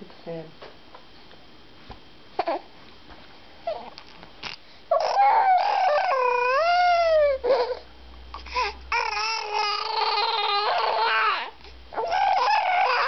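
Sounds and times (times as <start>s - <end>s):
high-pitched vocal wail: 10.6s - 13.0s.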